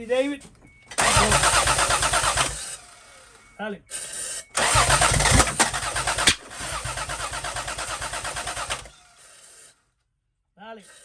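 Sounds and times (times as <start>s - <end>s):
starter cranking engine: 0.9s - 3.4s, 4.4s - 9.8s
sharp click: 6.2s - 6.4s.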